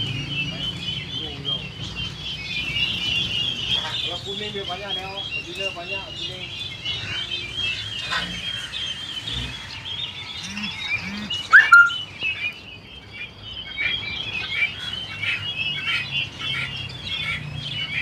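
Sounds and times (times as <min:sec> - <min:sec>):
small birds chirping: 0:00.0 - 0:18.0
sharp rising bird call: 0:07.0 - 0:12.2.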